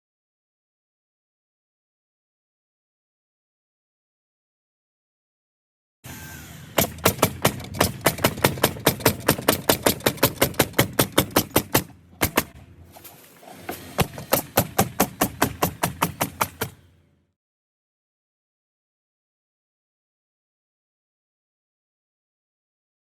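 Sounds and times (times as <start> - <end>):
nail gun firing rapidly: 6.1 - 12.6, 14.0 - 16.8.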